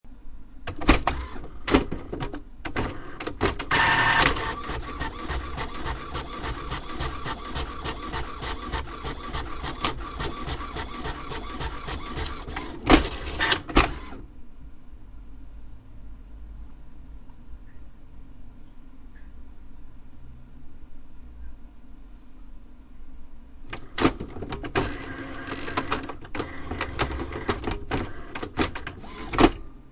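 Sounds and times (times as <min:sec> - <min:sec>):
printer clicks: 0:00.7 - 0:14.2, 0:23.7 - 0:29.6
printer clunks: 0:00.7 - 0:14.2, 0:23.7 - 0:29.7
printer mechanical ticking: 0:00.7 - 0:14.2, 0:23.7 - 0:29.6
printer whir: 0:00.7 - 0:14.3, 0:23.7 - 0:29.7.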